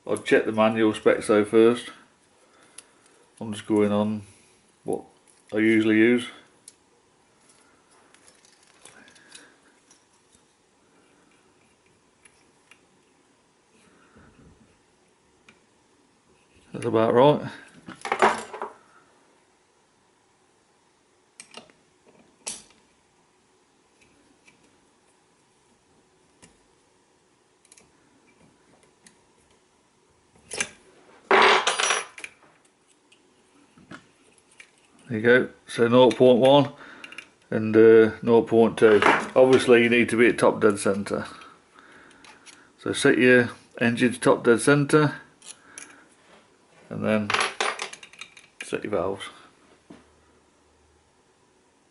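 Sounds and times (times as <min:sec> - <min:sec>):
soft handling noises: 0:00.1 - 0:18.9, 0:32.2 - 0:37.6.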